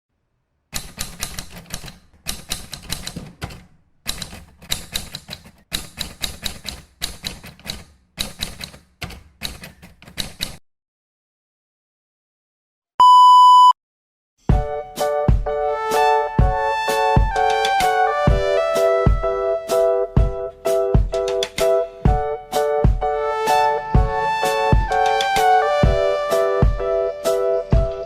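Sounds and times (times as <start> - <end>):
typewriter keys clacking: 0.8 - 10.6
electronic beep: 13.0 - 13.8
music: 14.4 - 28.0.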